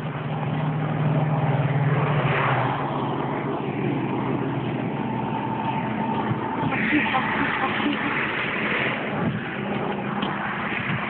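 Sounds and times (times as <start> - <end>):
motor vehicle passing by: 0.0 - 11.0.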